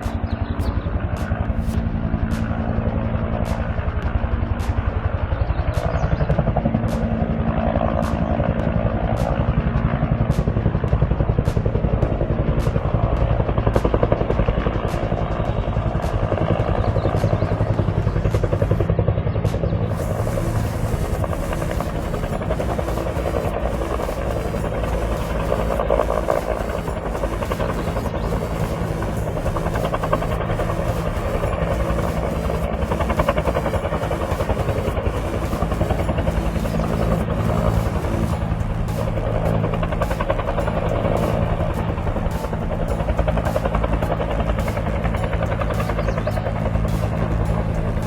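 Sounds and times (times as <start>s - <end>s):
motor droning: 19.8s - 48.0s.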